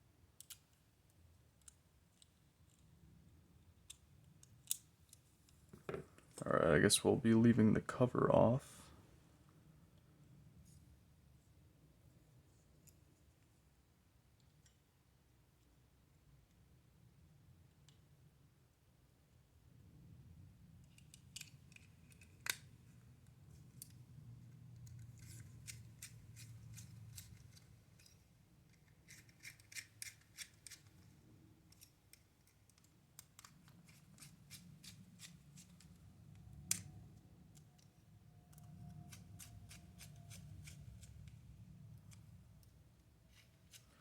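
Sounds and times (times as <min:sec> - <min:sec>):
plastic toy parts clicking: 0:00.4 - 0:00.8, 0:20.8 - 0:22.6, 0:24.8 - 0:31.1, 0:31.7 - 0:36.0.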